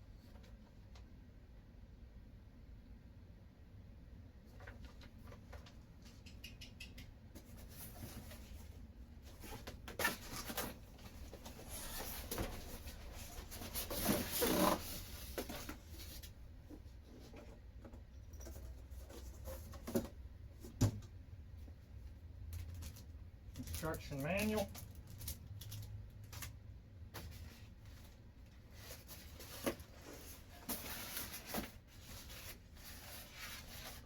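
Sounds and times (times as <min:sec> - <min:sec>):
paper and cardboard rustling: 0:07.4 - 0:17.6, 0:22.6 - 0:34.0.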